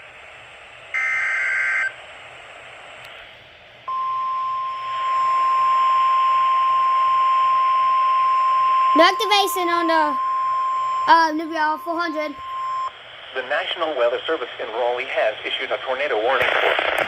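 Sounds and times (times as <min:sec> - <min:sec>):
steady warning alert tone: 0:03.9 - 0:12.9
radio hiss: 0:07.7 - 0:17.0.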